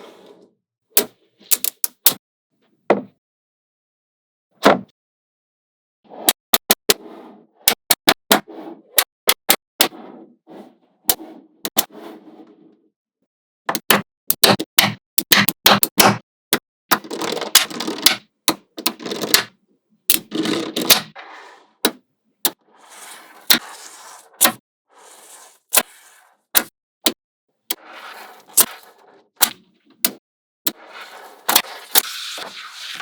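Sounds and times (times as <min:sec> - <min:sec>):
magnetic balls snapping together: 0:01.0 - 0:02.2
balls rattling and sliding: 0:20.2 - 0:26.5, 0:27.7 - 0:30.0, 0:30.7 - 0:33.0.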